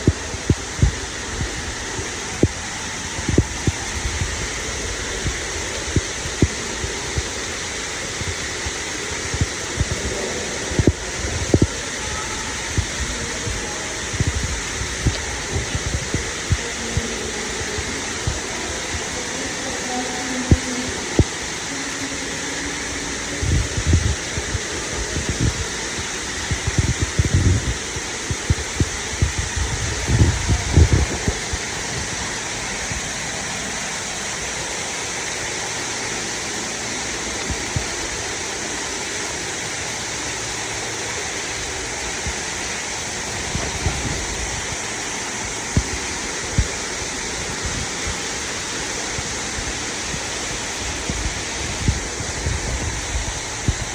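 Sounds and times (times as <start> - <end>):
low thumps and rumbles: 0.0 - 19.4, 23.2 - 33.2, 49.0 - 53.9
waterfall rushing: 0.0 - 53.9.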